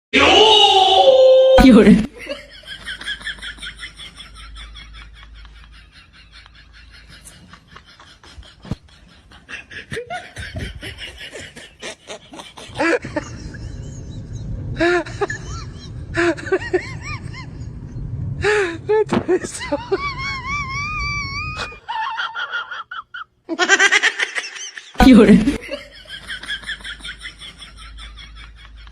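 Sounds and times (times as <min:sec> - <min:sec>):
person laughing: 0:04.4 - 0:17.8, 0:18.4 - 0:27.0.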